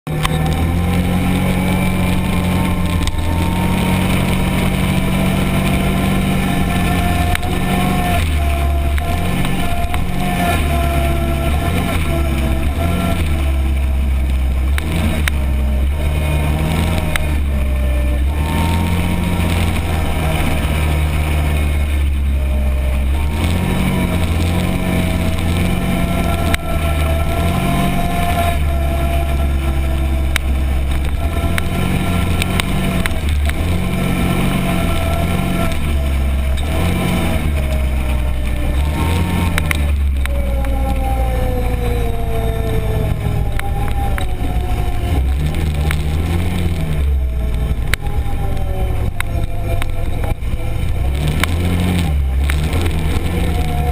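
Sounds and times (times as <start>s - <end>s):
utility vehicle engine revving: 0.0s - 53.9s.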